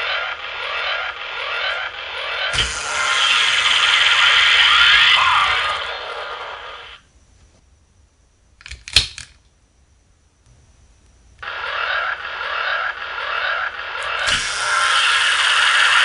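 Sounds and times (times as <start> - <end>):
toy electronic sound effects: 0.0 - 6.6, 11.4 - 16.0
sharp plastic click: 8.6 - 9.5.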